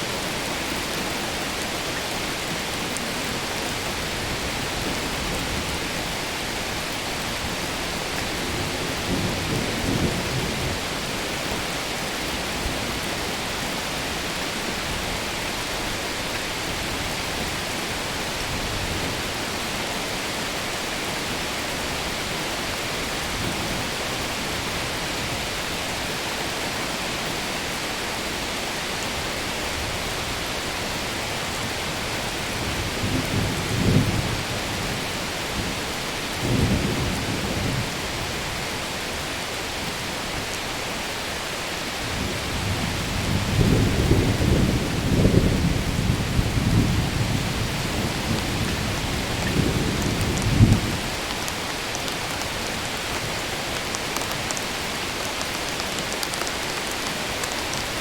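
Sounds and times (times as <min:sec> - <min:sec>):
steady rain hiss: 0:00.0 - 0:58.0
rolling thunder: 0:42.1 - 0:51.3.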